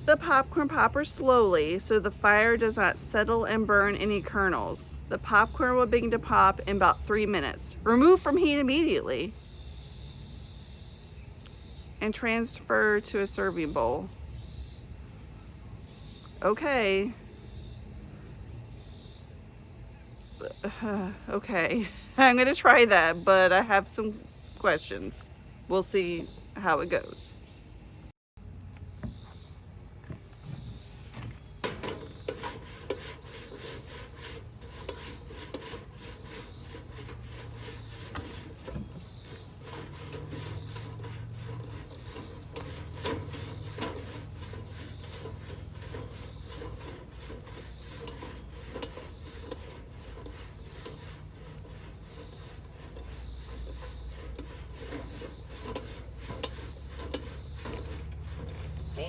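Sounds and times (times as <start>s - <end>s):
kernels swishing in a pan: 30.8s - 59.0s.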